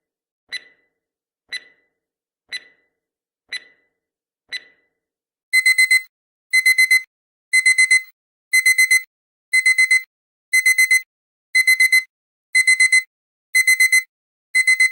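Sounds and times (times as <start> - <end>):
alarm clock beeping: 0.5 - 0.9, 1.5 - 1.9, 5.5 - 14.9.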